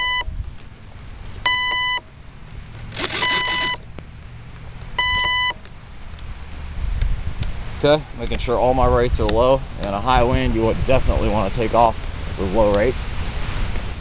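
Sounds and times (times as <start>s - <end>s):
electronic beeper tone: 0.0s - 0.3s, 1.4s - 2.0s, 3.0s - 3.8s, 5.0s - 5.6s
wind rumble on microphone: 0.0s - 1.5s, 5.9s - 14.0s.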